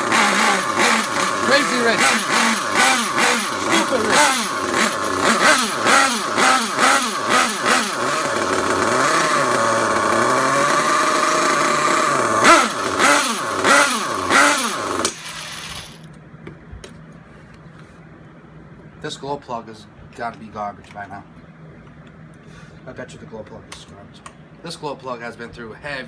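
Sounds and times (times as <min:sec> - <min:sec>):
small nitro engine revving: 0:00.0 - 0:16.1.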